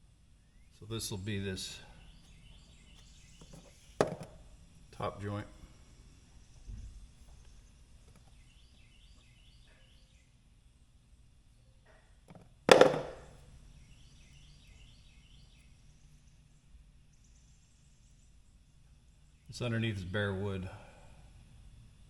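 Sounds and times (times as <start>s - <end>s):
sharp ringing knock: 12.7s - 13.3s.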